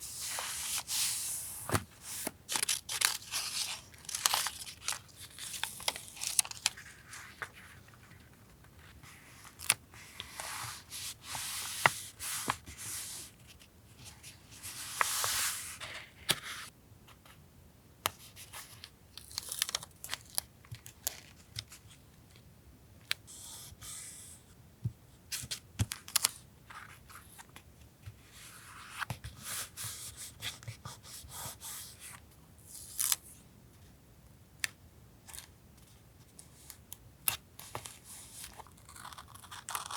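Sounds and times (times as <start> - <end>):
paper rustling: 0.1 - 13.3.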